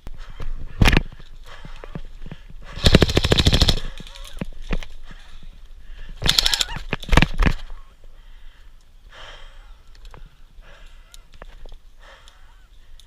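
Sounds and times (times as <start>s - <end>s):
field noise: 0.0s - 13.0s
airsoft guns firing bursts: 2.7s - 4.2s, 6.2s - 6.8s.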